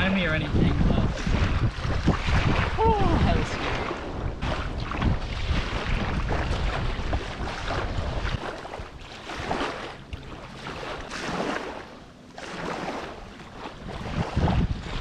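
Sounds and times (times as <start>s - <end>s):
wind buffeting microphone: 0.0s - 15.0s
water splashing while wading: 1.0s - 15.0s.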